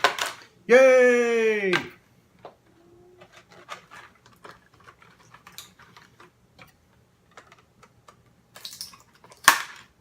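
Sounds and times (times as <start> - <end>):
toy and packaging clicking: 3.2 - 10.0.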